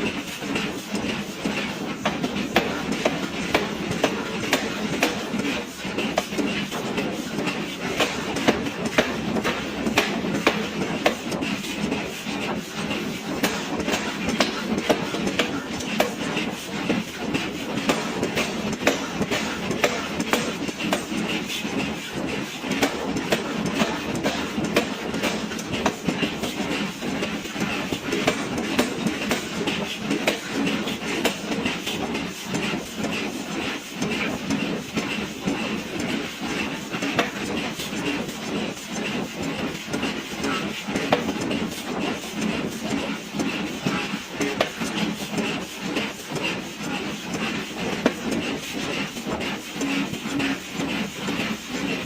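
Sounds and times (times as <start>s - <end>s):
forging hammer blows: 0.0s - 52.0s
machine running noise: 0.0s - 52.0s
forging hammer metallic blows: 12.9s - 21.6s.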